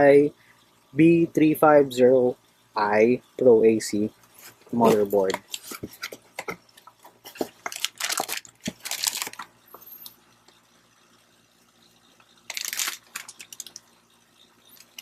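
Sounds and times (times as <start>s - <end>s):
packing material crinkling: 7.0s - 9.5s, 12.5s - 13.8s.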